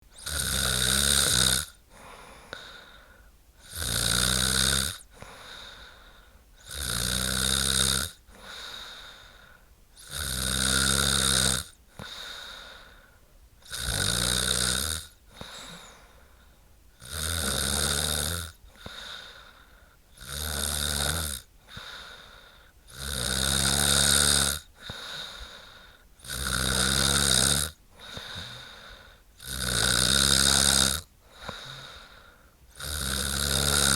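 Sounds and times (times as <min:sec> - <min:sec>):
woman snoring: 0:00.2 - 0:03.0, 0:03.6 - 0:05.9, 0:06.6 - 0:09.3, 0:10.0 - 0:12.9, 0:13.6 - 0:16.2, 0:17.0 - 0:33.9
soft breaths: 0:01.9 - 0:03.4, 0:05.0 - 0:06.6, 0:08.3 - 0:09.8, 0:11.8 - 0:13.4, 0:15.2 - 0:16.8, 0:18.6 - 0:20.1, 0:21.6 - 0:22.9, 0:24.7 - 0:26.2, 0:27.9 - 0:29.4, 0:31.2 - 0:32.7.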